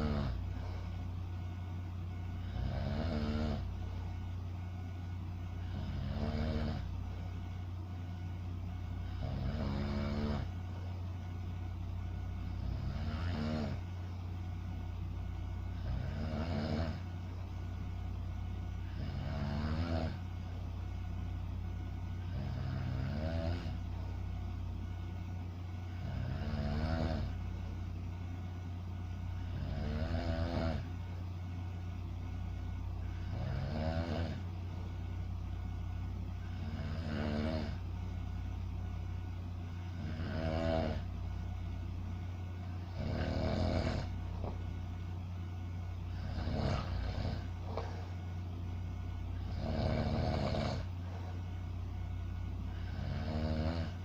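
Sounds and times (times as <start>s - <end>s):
person snoring: 0.0s - 0.8s, 2.4s - 3.7s, 5.6s - 7.0s, 9.0s - 10.5s, 12.4s - 13.8s, 15.8s - 17.0s, 18.8s - 20.2s, 22.2s - 23.8s, 25.9s - 27.4s, 29.4s - 30.9s, 33.0s - 34.5s, 36.4s - 37.8s, 39.9s - 41.1s, 42.8s - 44.2s, 46.1s - 48.1s, 49.4s - 51.4s, 52.7s - 54.0s
steady low hum: 0.0s - 54.0s.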